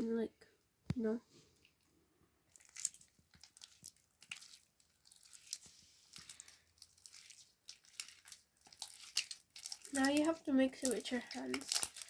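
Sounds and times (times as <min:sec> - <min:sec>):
sticky slime squelching: 0:01.6 - 0:12.0
slime snapping: 0:02.6 - 0:12.0.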